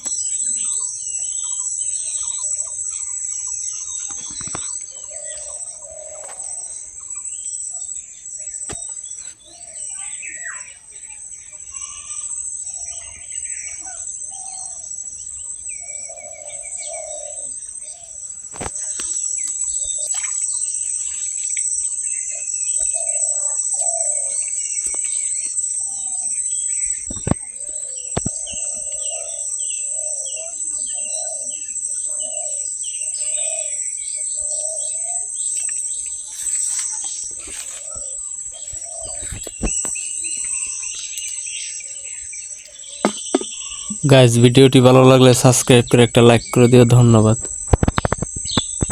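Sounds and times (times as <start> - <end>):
birds chirping: 0.0 - 48.9
insects buzzing: 0.0 - 48.9
sharp knocks: 43.0 - 44.1
low repeated call: 43.1 - 47.5.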